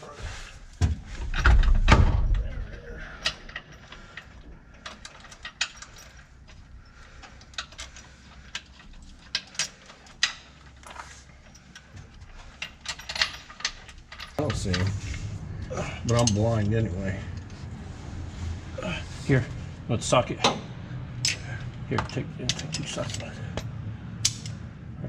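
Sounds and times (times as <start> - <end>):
hand tools and bolts clinking: 3.2 - 17.5, 21.2 - 24.6.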